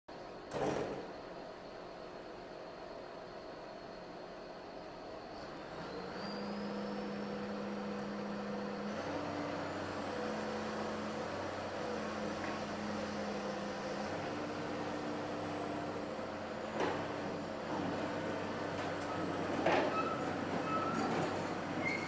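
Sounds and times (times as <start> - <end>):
excavator diesel engine running: 5.2 - 22.0.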